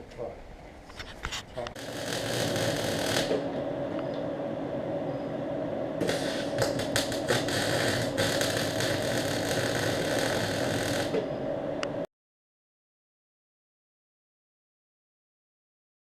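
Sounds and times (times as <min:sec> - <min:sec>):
mechanical hum: 0:00.0 - 0:12.1.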